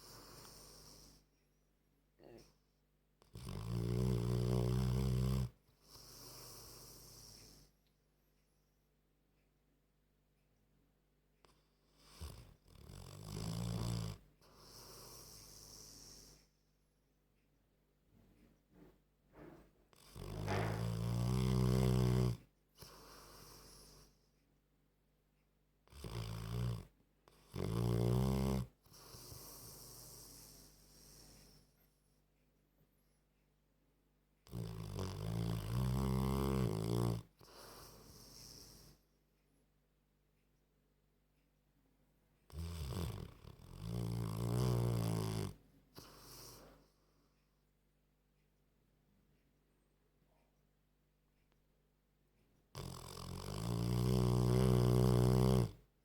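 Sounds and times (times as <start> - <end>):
dog snoring: 0.0 - 1.3, 3.2 - 7.8, 11.4 - 16.6, 19.3 - 24.3, 25.9 - 31.7, 34.4 - 39.0, 42.5 - 47.1, 52.7 - 55.9.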